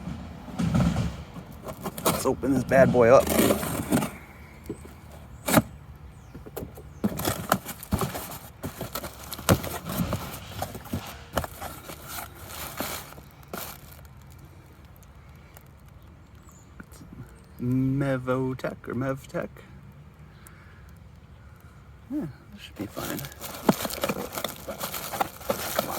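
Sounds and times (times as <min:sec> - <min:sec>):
cardboard crackling and scraping: 0:00.1 - 0:14.4, 0:22.7 - 0:25.9
tape tearing: 0:01.5 - 0:05.8, 0:06.4 - 0:14.2, 0:22.8 - 0:25.9.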